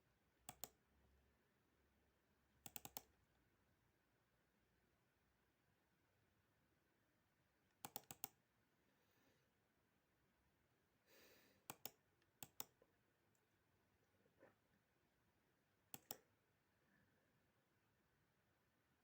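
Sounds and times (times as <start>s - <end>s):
computer mouse clicking: 0.5s - 0.8s, 2.6s - 3.1s, 7.8s - 8.4s, 11.6s - 12.8s, 15.9s - 16.3s
soft breath: 8.9s - 9.6s, 11.0s - 11.7s.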